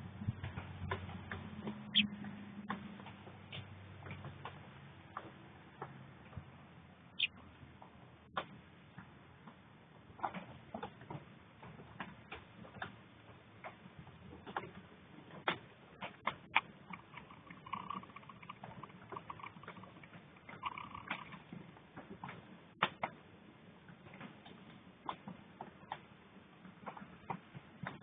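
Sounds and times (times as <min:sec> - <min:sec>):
raindrops tapping on hard surface: 0:15.5 - 0:23.1.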